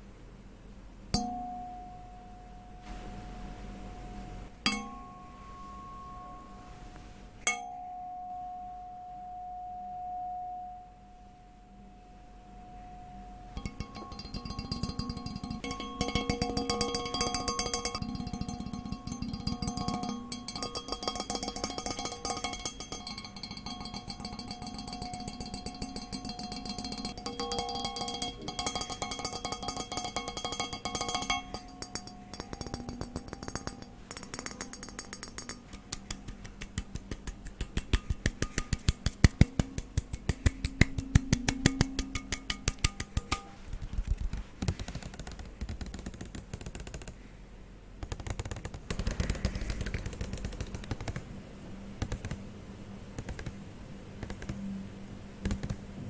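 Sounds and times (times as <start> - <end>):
white noise: 0.0 - 56.0
ringing tones: 1.2 - 35.7
tapping on hard objects: 13.6 - 47.2, 48.0 - 51.2.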